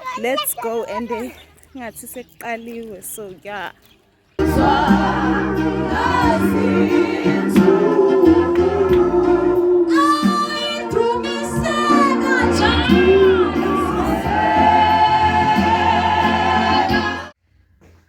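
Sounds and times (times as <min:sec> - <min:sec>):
steady bass accompaniment: 0:04.4 - 0:17.3
gospel choir singing: 0:04.4 - 0:17.4.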